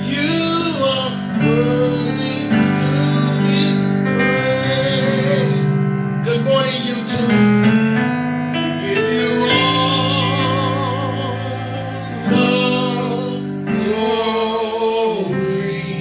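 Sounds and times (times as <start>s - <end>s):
person singing with vibrato: 0.0s - 7.7s, 8.5s - 16.0s
keyboard chords: 0.0s - 16.0s.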